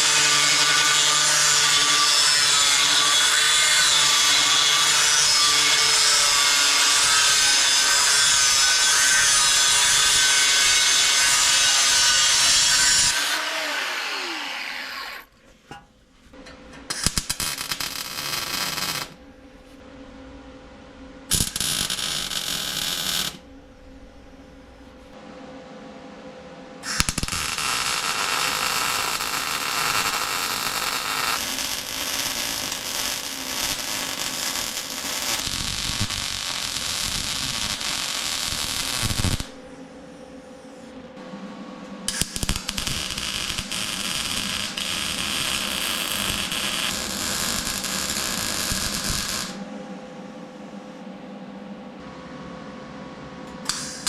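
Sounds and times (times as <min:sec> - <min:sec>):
arc welder crackling hiss: 0:16.9 - 0:19.2, 0:21.3 - 0:23.4, 0:26.8 - 0:39.6, 0:42.1 - 0:49.6, 0:53.7 - 0:54.0.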